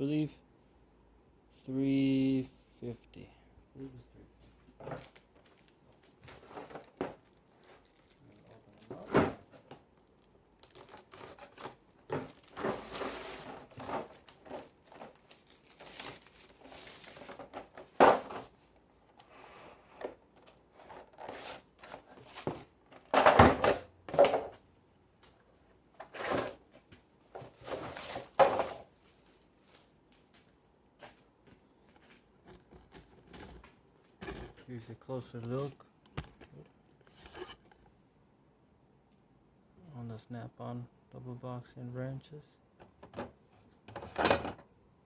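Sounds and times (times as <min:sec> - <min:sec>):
packaging tearing and crinkling: 0:10.0 - 0:17.5.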